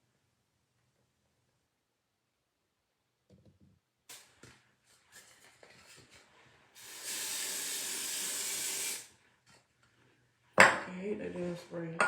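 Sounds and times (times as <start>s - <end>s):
aerosol spray can hissing: 6.8s - 9.1s.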